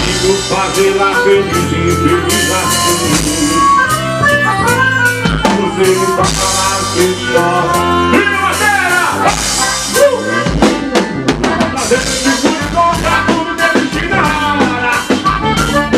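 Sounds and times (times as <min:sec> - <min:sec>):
drum kit beat: 0:00.0 - 0:15.9
melodic instrumental line: 0:00.0 - 0:15.9.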